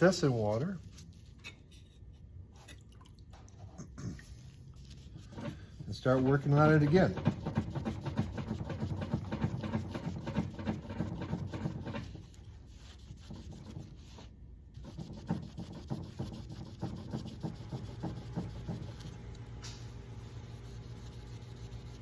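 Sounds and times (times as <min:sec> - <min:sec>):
sandpaper scratching on metal: 0:04.4 - 0:19.2, 0:20.2 - 0:22.0.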